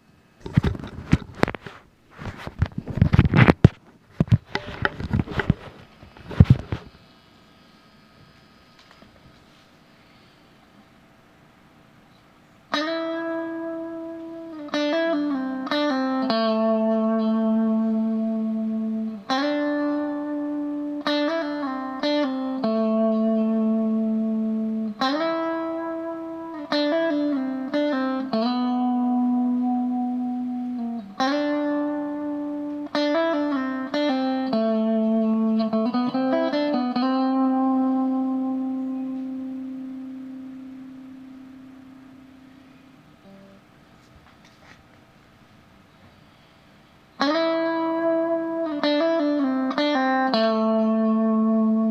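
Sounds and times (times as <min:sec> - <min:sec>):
electric guitar notes: 0:12.7 - 0:44.8, 0:47.2 - 0:51.9.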